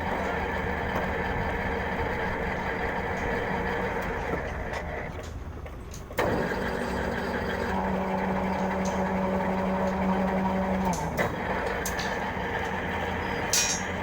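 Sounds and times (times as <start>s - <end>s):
bending machine motor humming: 6.2s - 14.0s.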